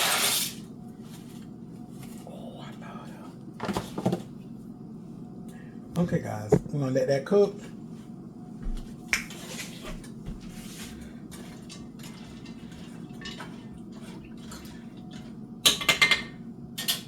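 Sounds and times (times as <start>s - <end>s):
steady low hum: 0.6s - 16.8s.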